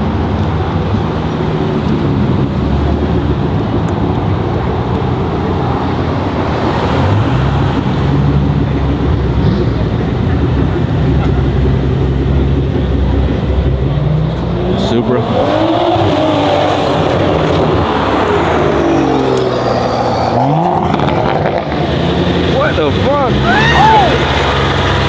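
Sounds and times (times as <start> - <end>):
car engines revving: 0.0 - 25.0
car passing: 0.0 - 25.0.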